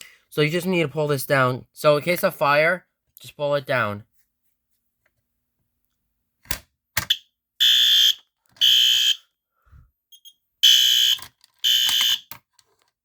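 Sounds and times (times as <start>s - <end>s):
fire alarm horn blasts: 7.1s - 9.2s, 10.2s - 12.3s
alarm pull station clicks: 10.2s - 12.4s.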